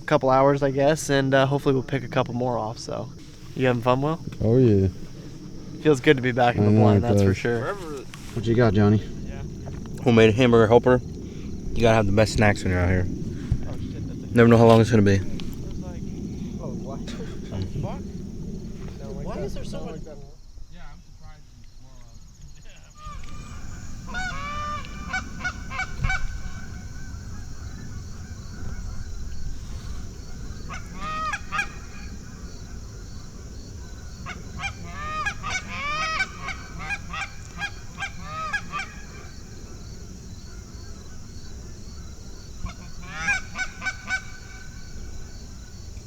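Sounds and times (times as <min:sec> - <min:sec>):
geese honking and clucking: 0:23.0 - 0:46.0.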